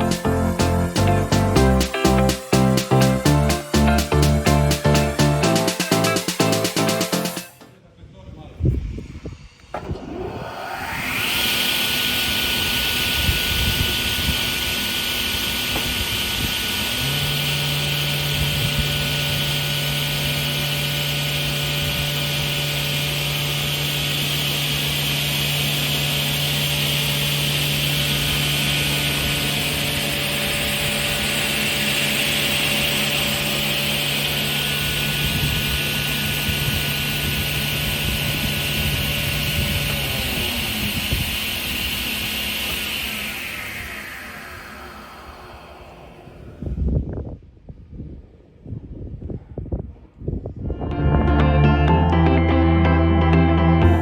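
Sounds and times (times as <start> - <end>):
strong low hum: 0.0 - 7.3, 8.3 - 14.5, 36.6 - 54.0
table saw running: 0.0 - 7.8, 9.6 - 46.8.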